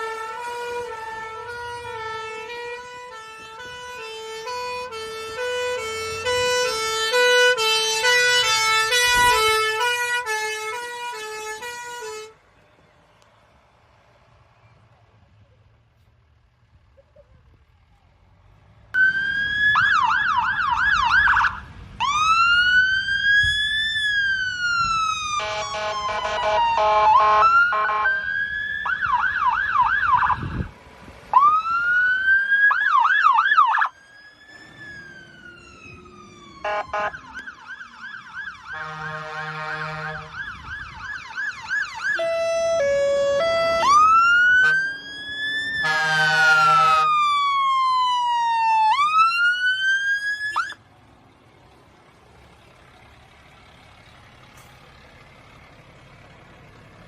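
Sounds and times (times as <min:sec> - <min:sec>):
emergency vehicle sirens: 0:00.0 - 0:57.0
vehicle engine rumble: 0:00.0 - 0:57.0.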